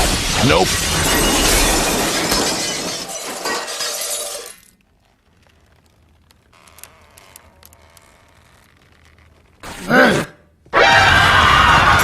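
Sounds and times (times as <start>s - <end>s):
glass shattering: 0.0s - 4.8s
glass pieces tinkling: 0.8s - 4.8s.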